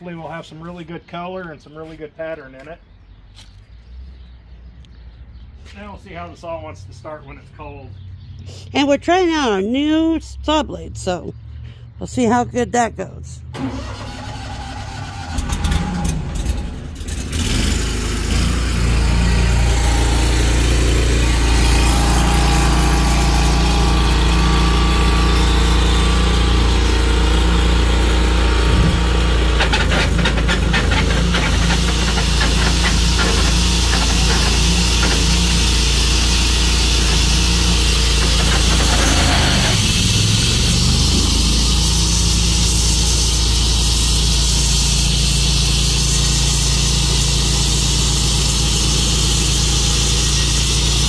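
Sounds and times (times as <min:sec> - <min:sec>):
engine running: 0:04.9 - 0:51.0
engine cranking: 0:13.6 - 0:51.0.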